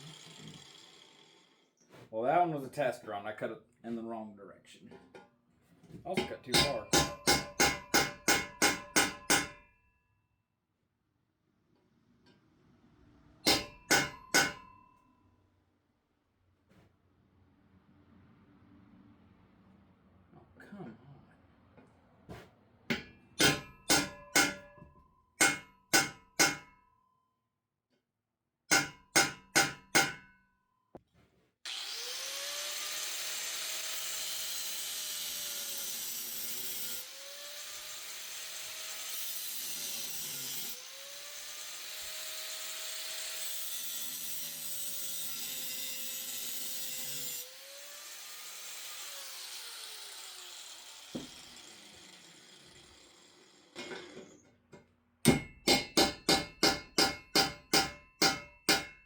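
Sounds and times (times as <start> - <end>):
angle grinder cutting metal: 0.0 - 1.8, 31.7 - 54.5
hammer striking chisel: 6.2 - 9.8, 13.4 - 15.0, 22.9 - 26.9, 28.7 - 30.4, 51.1 - 51.4, 53.8 - 59.0.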